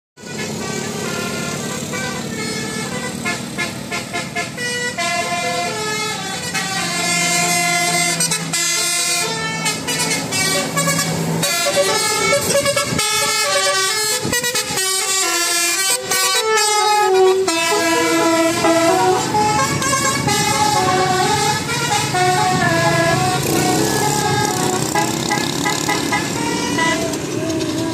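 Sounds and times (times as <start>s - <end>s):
multi-tone air horn melody: 0.2s - 27.9s.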